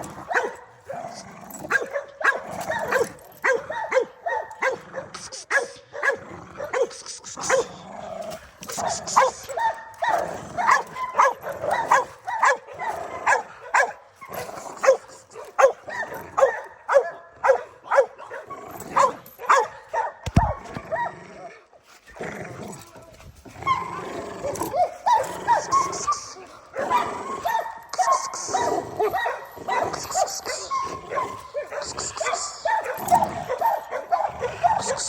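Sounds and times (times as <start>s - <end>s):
dog barking: 0.2s - 7.8s, 8.7s - 14.1s, 14.8s - 21.2s, 24.6s - 35.0s.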